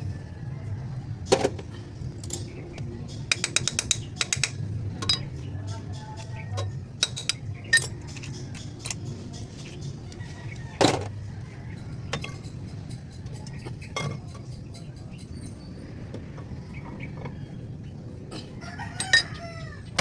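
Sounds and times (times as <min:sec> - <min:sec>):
tools and metal parts clanking: 0:01.3 - 0:17.5, 0:18.3 - 0:20.0
rooster crowing: 0:18.3 - 0:20.0.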